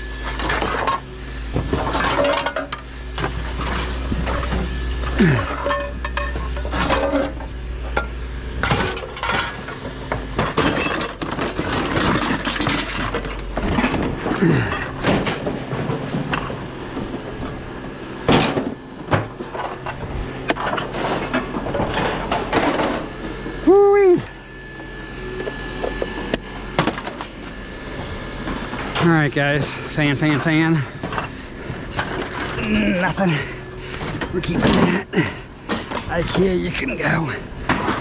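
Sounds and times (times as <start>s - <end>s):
low steady hum: 0.0s - 38.0s
scrap metal clinking and clattering: 0.2s - 16.6s.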